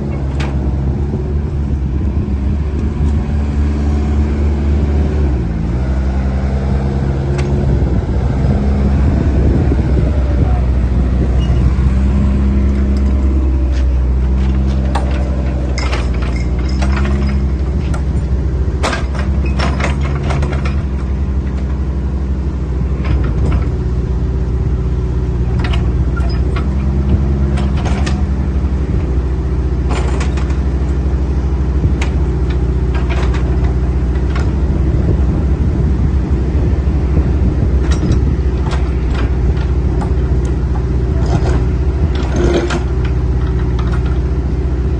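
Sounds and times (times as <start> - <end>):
excavator diesel engine running: 0.0 - 44.9
hydraulics whine: 0.0 - 44.9
machine knocks and clanks: 12.6 - 21.8, 23.0 - 23.8, 25.5 - 28.4, 29.8 - 31.0, 31.9 - 34.6, 37.8 - 44.3.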